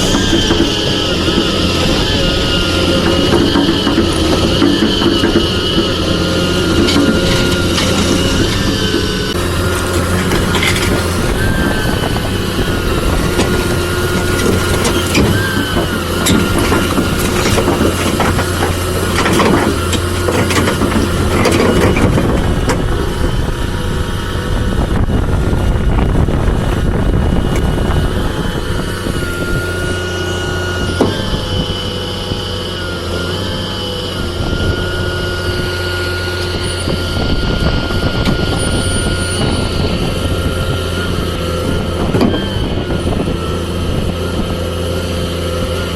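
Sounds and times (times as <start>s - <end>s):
knocks and clanks: 0.0s - 12.4s, 13.0s - 23.2s
excavator diesel engine humming: 0.0s - 45.9s
high whine: 0.0s - 45.9s.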